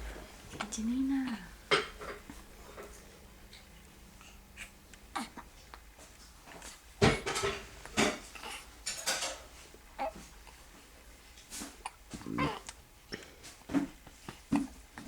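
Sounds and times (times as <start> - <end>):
newborn baby noises: 4.1 - 7.4, 8.0 - 10.7, 11.4 - 12.9.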